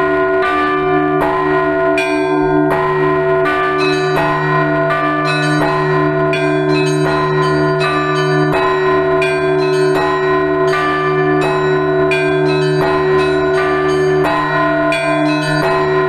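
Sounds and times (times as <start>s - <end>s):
deep bell humming: 3.4s - 16.0s
small bells struck quickly: 3.8s - 16.0s.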